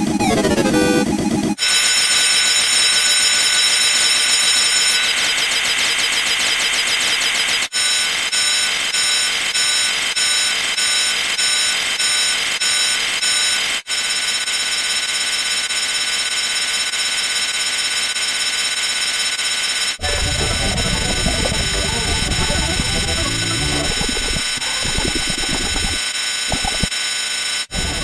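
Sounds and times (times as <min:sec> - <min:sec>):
electronic alarm beeping: 0:20.0 - 0:26.9
steady high-pitched alarm tone: 0:20.0 - 0:26.9.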